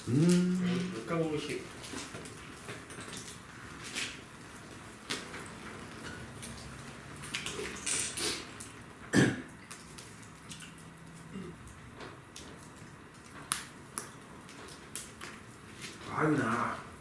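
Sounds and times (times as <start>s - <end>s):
bonfire crackling: 0.0s - 17.0s
person coughing: 9.2s - 9.5s.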